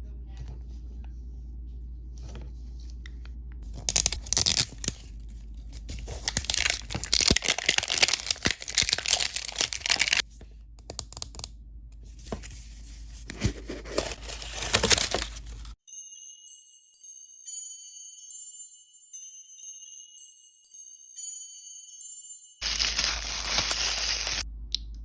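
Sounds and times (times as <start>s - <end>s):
plastic packaging tearing and crinkling: 3.7s - 10.2s, 13.3s - 15.8s, 22.6s - 24.4s.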